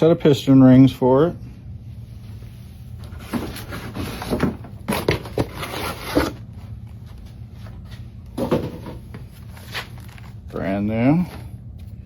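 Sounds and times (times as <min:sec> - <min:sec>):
packaging rustling and crinkling: 0:09.3 - 0:10.6.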